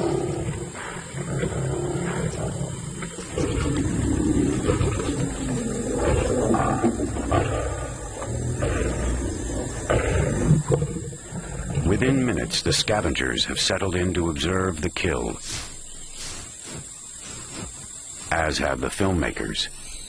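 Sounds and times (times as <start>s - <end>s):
lions growling and snarling: 0.0s - 13.6s.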